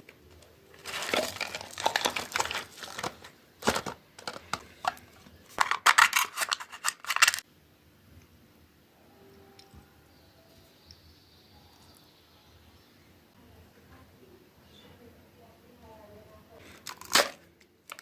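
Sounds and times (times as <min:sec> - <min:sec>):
packaging tearing and crinkling: 0:00.7 - 0:05.0, 0:05.6 - 0:07.4, 0:16.8 - 0:18.0.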